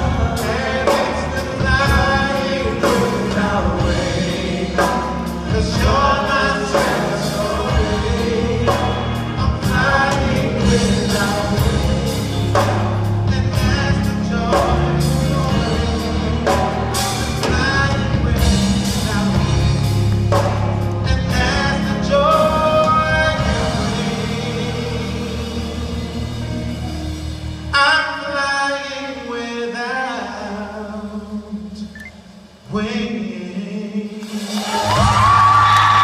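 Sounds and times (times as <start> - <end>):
person singing: 0.0 - 19.9, 20.9 - 27.2
choir backing voices: 0.0 - 27.6
band with drums: 0.0 - 27.9, 34.2 - 36.0.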